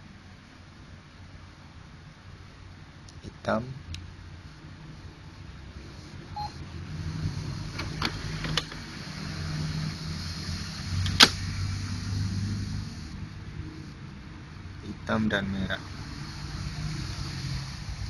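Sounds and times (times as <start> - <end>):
printer clicks: 7.8 - 8.8.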